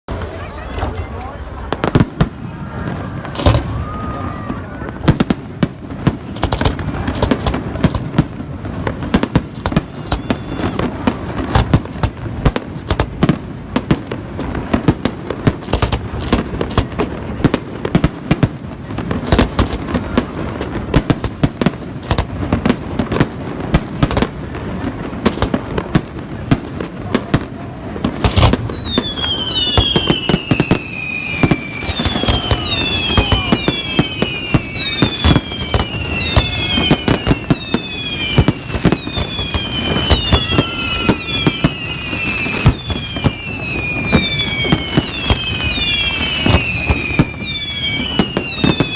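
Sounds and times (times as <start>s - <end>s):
fireworks bangs and crackles: 0.1s - 48.9s
high falling whistles: 28.6s - 48.9s.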